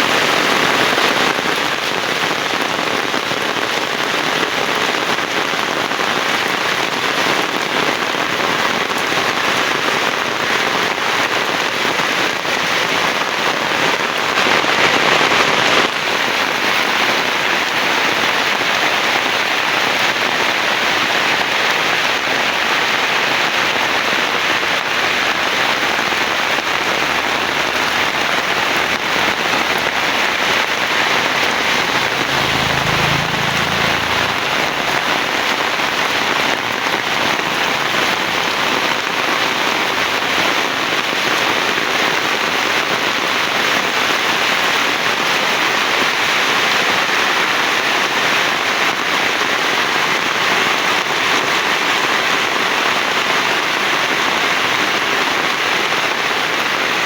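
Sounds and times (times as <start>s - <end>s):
heavy rain pouring: 0.0s - 57.0s
low rumble: 28.8s - 35.9s.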